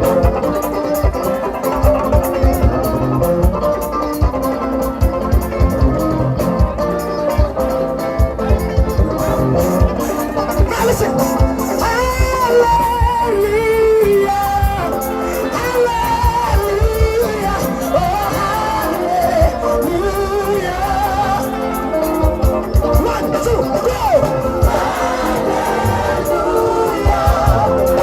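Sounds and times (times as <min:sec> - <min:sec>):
band with drum beat: 0:00.0 - 0:28.0
people singing: 0:12.7 - 0:22.2, 0:24.4 - 0:28.0.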